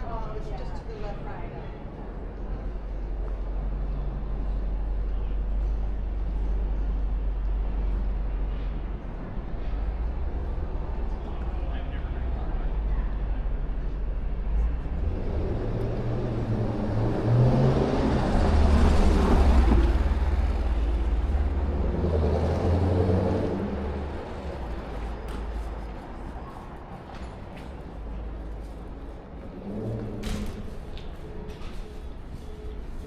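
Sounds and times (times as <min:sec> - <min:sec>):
vehicles passing with engine rumble: 0:00.0 - 0:33.0.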